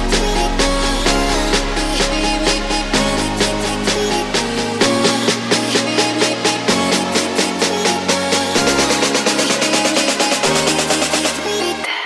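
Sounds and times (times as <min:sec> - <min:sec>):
electronic music with beat: 0:00.0 - 0:12.0.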